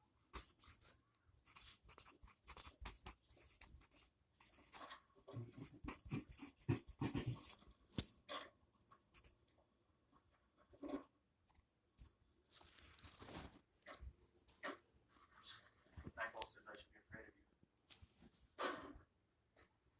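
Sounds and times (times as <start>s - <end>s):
pencil drawing on paper: 0.2s - 8.1s.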